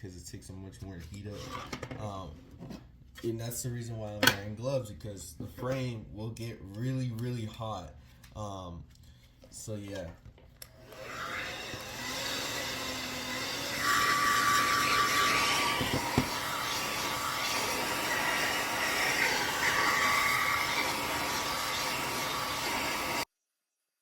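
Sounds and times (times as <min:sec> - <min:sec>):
hair dryer blowing: 0:10.7 - 0:23.2.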